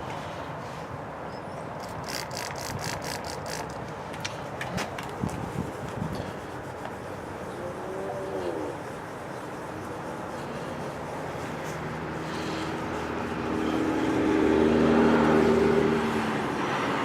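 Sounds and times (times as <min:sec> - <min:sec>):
outdoor background noise: 0:00.0 - 0:17.0
paper towel scrubbing glass: 0:04.9 - 0:16.9.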